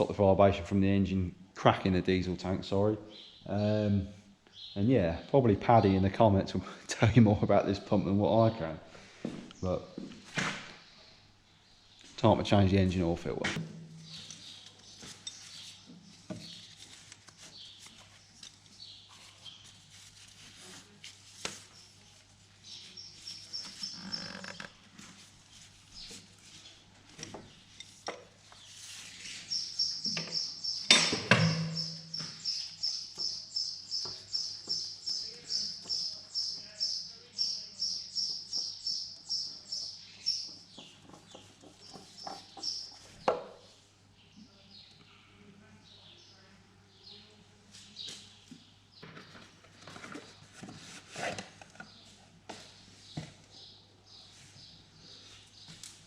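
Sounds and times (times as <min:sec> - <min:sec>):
bird chirping: 0:03.0 - 0:06.0, 0:13.1 - 0:16.9, 0:22.6 - 0:24.8, 0:28.5 - 0:45.0.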